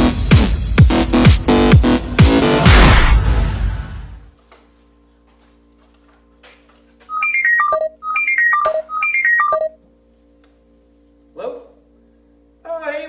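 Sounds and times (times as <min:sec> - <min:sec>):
phone ringtone melody: 0:07.1 - 0:09.8.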